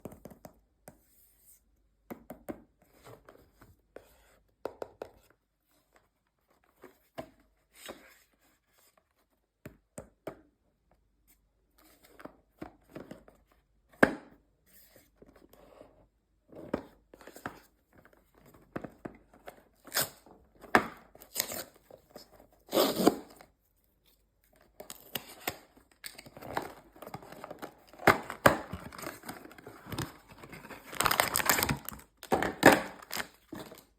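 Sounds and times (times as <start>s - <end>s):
toy packaging tearing and crinkling: 22.7s - 23.4s, 24.9s - 33.9s.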